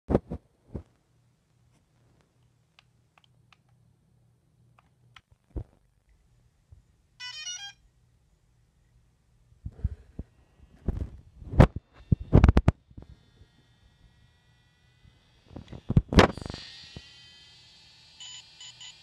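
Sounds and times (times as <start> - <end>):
faint low hum: 0.2 - 16.5.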